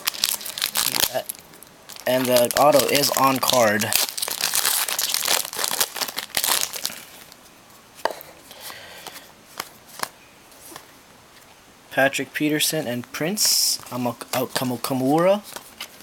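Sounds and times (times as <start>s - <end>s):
foil wrapper crinkling: 0.0s - 7.3s.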